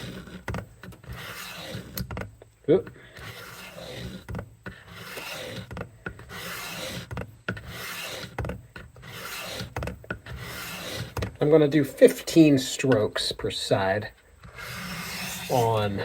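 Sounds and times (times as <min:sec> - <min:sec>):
knife scraping on sharpening stone: 0:14.5 - 0:15.9.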